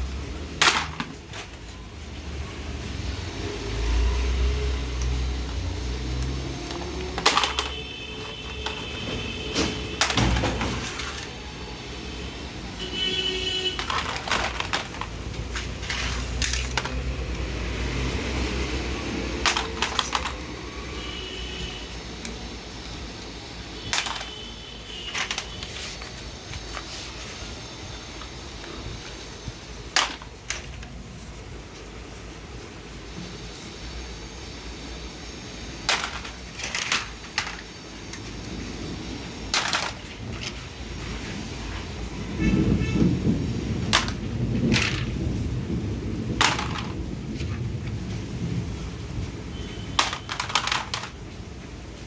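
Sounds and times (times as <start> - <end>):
plastic toy guns clicking: 23.8 - 24.4, 50.0 - 51.2.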